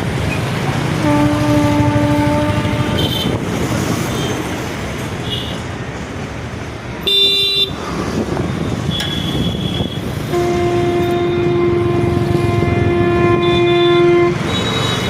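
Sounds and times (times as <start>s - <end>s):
train rumbling: 0.0s - 7.1s, 7.7s - 15.0s
train horn: 1.0s - 3.4s, 10.2s - 15.0s
short high horn toot: 8.9s - 15.0s.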